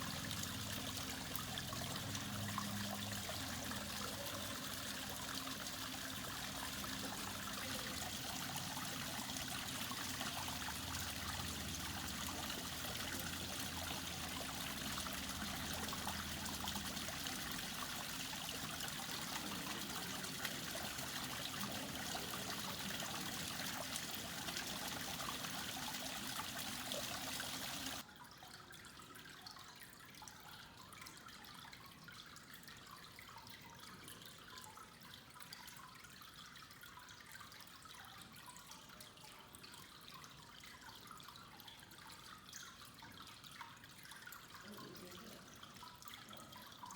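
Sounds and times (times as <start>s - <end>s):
fountain water splashing: 0.0s - 28.0s
water trickling and dripping: 0.0s - 46.9s.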